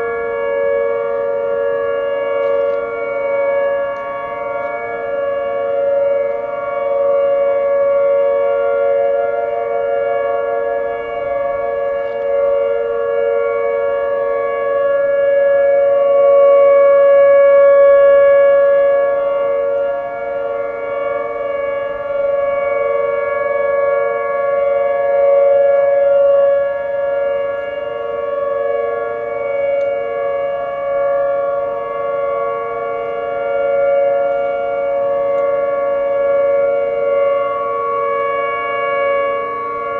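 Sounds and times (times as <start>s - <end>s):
outdoor warning sirens: 0.0s - 39.9s.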